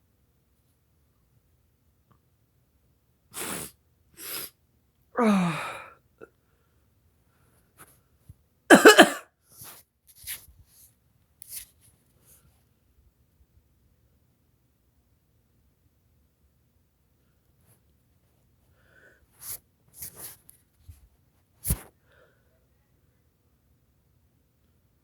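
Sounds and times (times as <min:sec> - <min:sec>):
faint sniffs: 0:03.3 - 0:04.6, 0:09.4 - 0:10.4, 0:18.7 - 0:20.4, 0:21.6 - 0:22.5
man sneezing: 0:05.2 - 0:05.9, 0:08.7 - 0:09.2.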